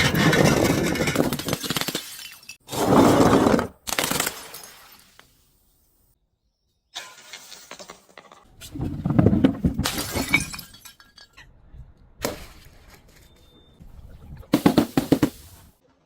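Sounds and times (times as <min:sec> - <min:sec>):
glass breaking and crunching: 0:00.0 - 0:02.6, 0:09.8 - 0:11.4.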